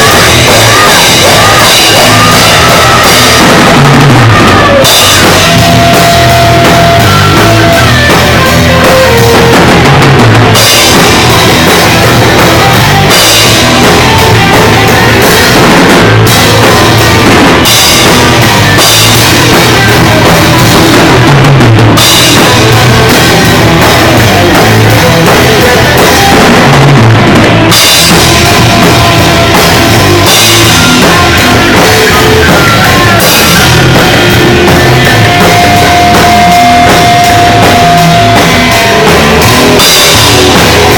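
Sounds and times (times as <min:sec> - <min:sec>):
drum kit: 0:00.0 - 0:40.9
loud rock music: 0:00.0 - 0:40.9.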